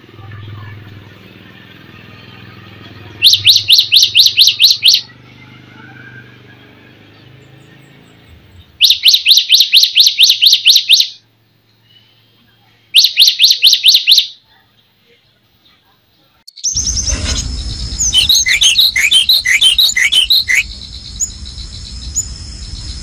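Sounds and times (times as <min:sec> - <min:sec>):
songbird singing repeated sharp notes: 0:03.2 - 0:05.2, 0:06.6 - 0:12.2, 0:13.0 - 0:14.5, 0:16.5 - 0:17.1, 0:18.0 - 0:23.0.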